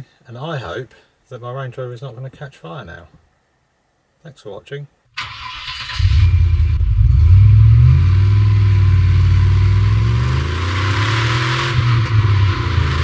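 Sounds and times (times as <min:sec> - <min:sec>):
car engine revving: 0:05.3 - 0:13.0.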